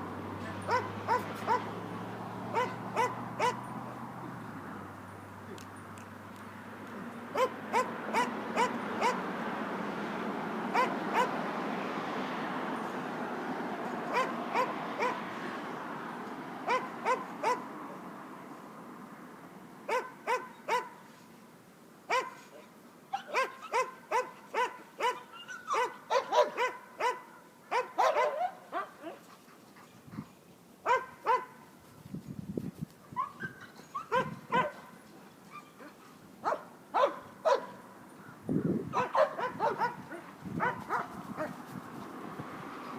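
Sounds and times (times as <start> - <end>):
dog barking: 0.6 - 1.7, 2.5 - 3.6, 7.3 - 9.2, 10.7 - 11.4, 14.1 - 15.2, 16.7 - 17.6, 19.9 - 21.0, 22.1 - 29.2, 30.8 - 31.6, 34.0 - 34.9, 35.8 - 37.8, 38.9 - 41.5.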